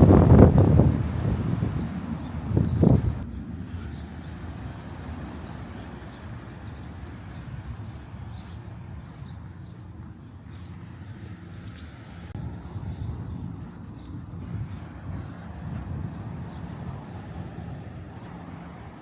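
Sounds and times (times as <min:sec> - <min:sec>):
birds chirping: 0:00.0 - 0:12.2.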